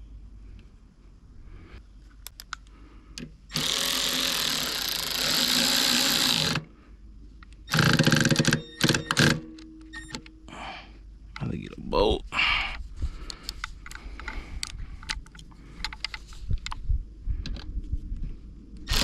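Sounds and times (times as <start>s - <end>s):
power tool running: 3.5s - 6.6s.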